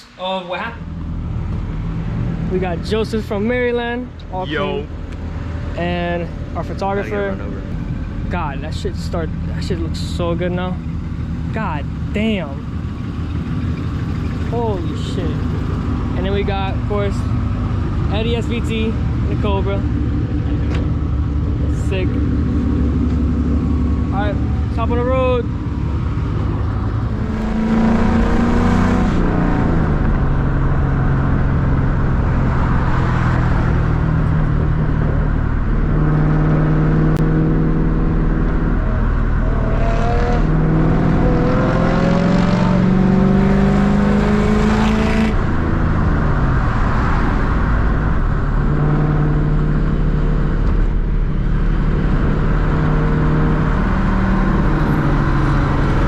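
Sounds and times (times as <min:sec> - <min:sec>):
car engine accelerating: 0:00.0 - 0:56.0.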